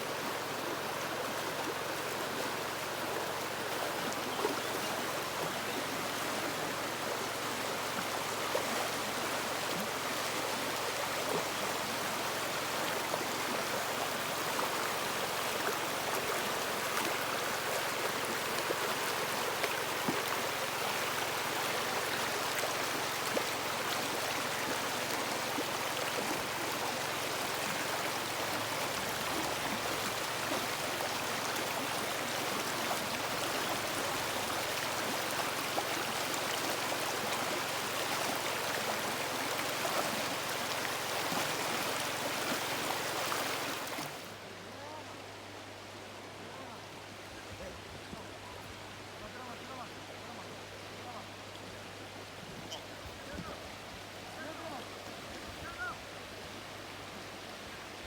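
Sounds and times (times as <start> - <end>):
river water splashing over rocks: 0.0 - 44.4.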